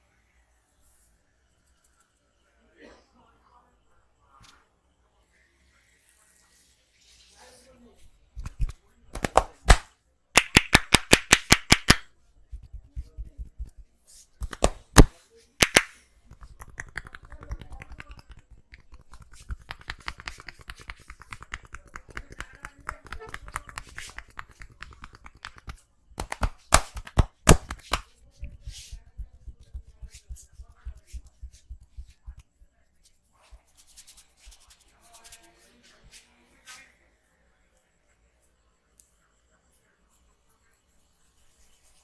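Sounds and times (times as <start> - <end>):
soft rapid tapping: 8.4 - 9.8, 10.4 - 32.6
hands clapping on head: 8.4 - 13.8, 14.4 - 32.4.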